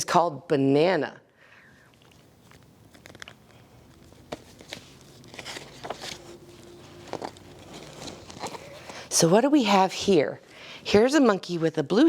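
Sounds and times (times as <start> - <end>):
picture book pages rustling: 2.0 - 9.9.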